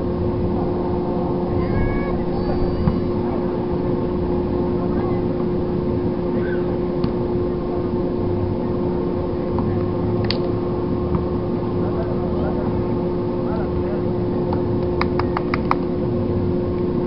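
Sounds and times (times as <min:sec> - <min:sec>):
boat motor running: 0:00.0 - 0:17.0.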